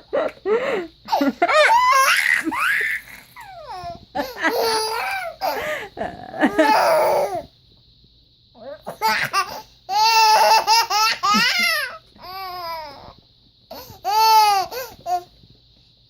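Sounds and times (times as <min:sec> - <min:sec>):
baby laughing: 0:01.1 - 0:05.6, 0:08.9 - 0:12.8.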